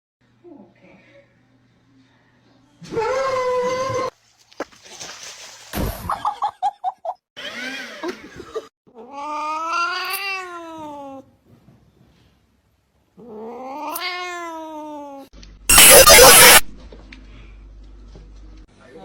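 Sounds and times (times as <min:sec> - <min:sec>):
cat yowling: 0:02.9 - 0:04.1, 0:09.0 - 0:11.2, 0:13.3 - 0:16.6.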